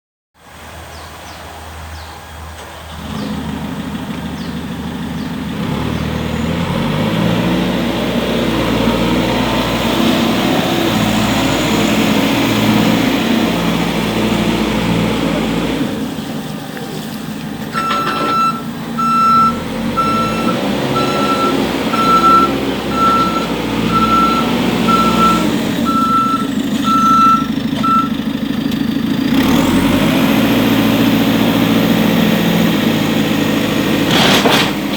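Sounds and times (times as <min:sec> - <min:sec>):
diesel engine running: 0:00.4 - 0:34.9
reversing alarm beeping: 0:17.7 - 0:28.2.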